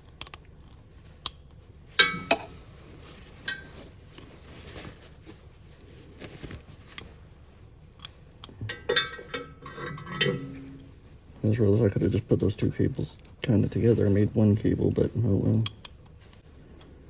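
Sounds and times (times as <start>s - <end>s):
metal clinking and tapping: 0.0s - 4.3s, 8.0s - 11.1s
short metallic ring: 2.0s - 2.7s, 8.7s - 11.0s.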